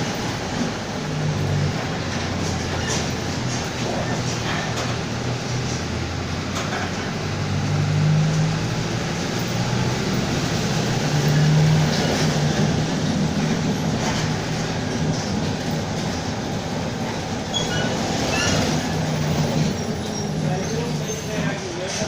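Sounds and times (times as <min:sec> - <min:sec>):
bus rumble: 0:00.0 - 0:22.0
short high squeaks: 0:17.5 - 0:21.5.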